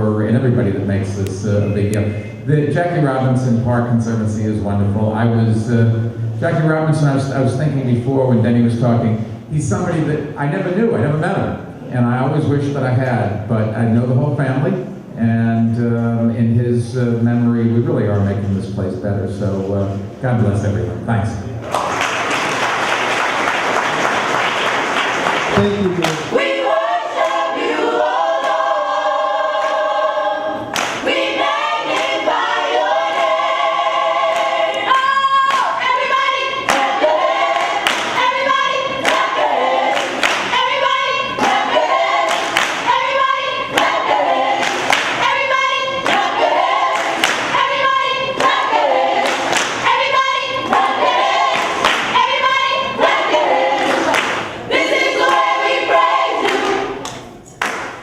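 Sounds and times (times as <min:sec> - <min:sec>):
audience applause: 0:21.7 - 0:26.3
hand-clapping beat: 0:21.7 - 0:26.4, 0:30.7 - 0:31.3, 0:31.9 - 0:32.2, 0:34.3 - 0:35.8, 0:36.6 - 0:40.7, 0:41.4 - 0:43.0, 0:43.7 - 0:45.3, 0:46.0 - 0:47.7, 0:48.4 - 0:52.4, 0:53.0 - 0:58.0
gospel choir singing: 0:21.7 - 0:57.9.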